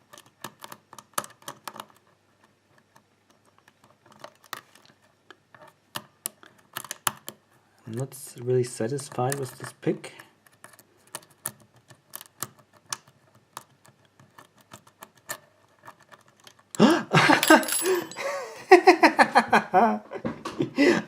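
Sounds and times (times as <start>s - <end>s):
lock pick clicking in lock: 6.0s - 7.4s
person laughing and exclaiming: 16.8s - 21.0s.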